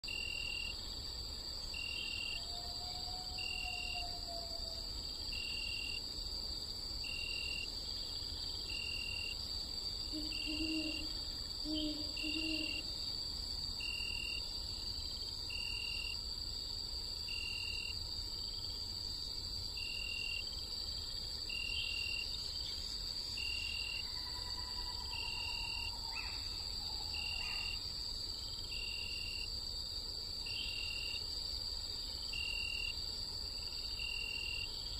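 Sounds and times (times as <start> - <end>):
shrill insect chorus: 0.0 - 34.9
short insect chirp: 0.1 - 34.9
owl hooting: 10.1 - 12.8.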